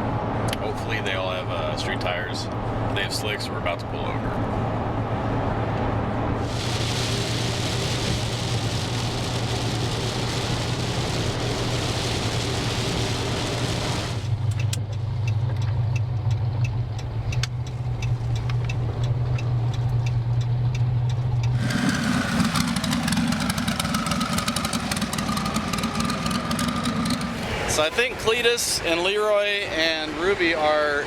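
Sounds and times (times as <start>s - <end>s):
vehicle engine droning: 0.0s - 31.0s
higher engine whine: 6.2s - 20.4s, 21.3s - 28.4s
rain and wet road hiss: 6.4s - 14.4s, 21.6s - 28.4s
engine ticking: 6.5s - 27.8s.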